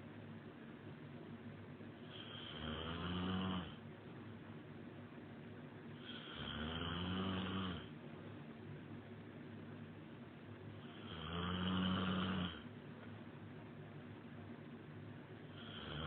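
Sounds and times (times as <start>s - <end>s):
man snoring: 2.0s - 3.8s, 6.0s - 7.9s, 10.8s - 12.7s, 15.5s - 16.0s.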